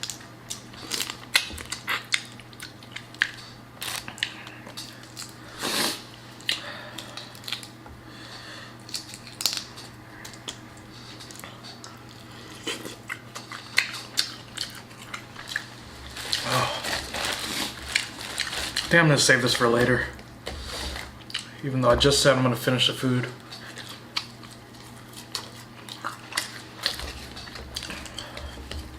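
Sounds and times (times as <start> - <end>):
food being chewed: 0.0 - 7.8, 8.8 - 19.0, 20.2 - 21.6, 23.4 - 28.9
shells cracking and peeling: 6.4 - 7.8, 8.8 - 11.4.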